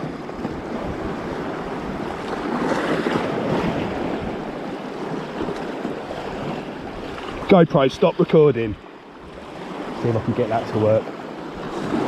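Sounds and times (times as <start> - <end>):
wind on microphone: 0.0 - 7.5
waves washing against rocks: 0.0 - 12.0.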